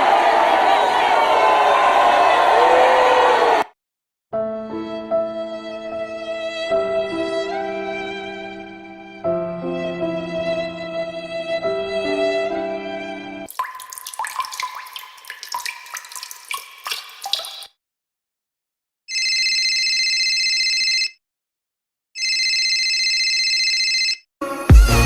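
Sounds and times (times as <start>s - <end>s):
water dripping: 13.5s - 17.7s.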